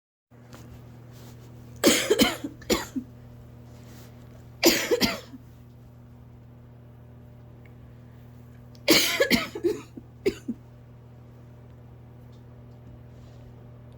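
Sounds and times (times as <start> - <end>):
person coughing harshly: 1.8 - 3.1, 4.6 - 5.4, 8.9 - 10.6.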